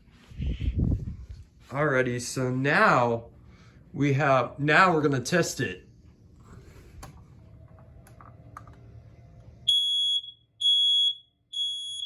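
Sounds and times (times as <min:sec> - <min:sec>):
smoke alarm beeps: 0:09.6 - 0:12.0.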